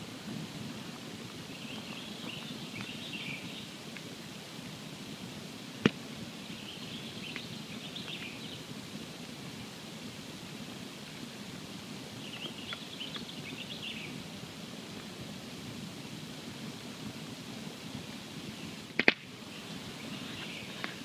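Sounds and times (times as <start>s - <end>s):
campfire burning rumble: 0.0s - 21.0s
fire crackles: 0.0s - 21.0s
sharp loud fire pop: 5.8s - 6.0s, 19.0s - 19.3s.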